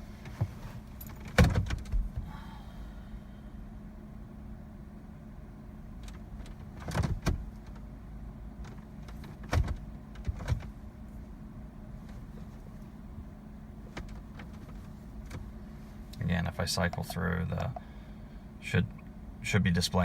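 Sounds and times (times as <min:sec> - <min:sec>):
steady low hum: 0:00.0 - 0:09.2, 0:09.8 - 0:20.0
car controls clicking and knocking: 0:08.6 - 0:10.7, 0:13.8 - 0:15.5, 0:16.7 - 0:17.8.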